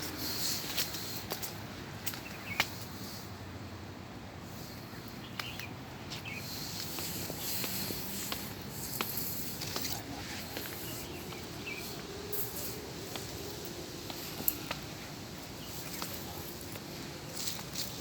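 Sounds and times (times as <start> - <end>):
footsteps on path: 5.4 - 18.0
insects buzzing: 6.3 - 18.0
bird chirps: 10.6 - 12.8.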